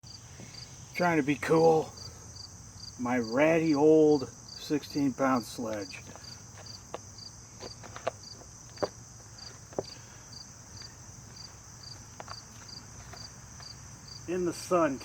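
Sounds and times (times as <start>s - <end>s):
insects chirping: 0.0s - 15.0s.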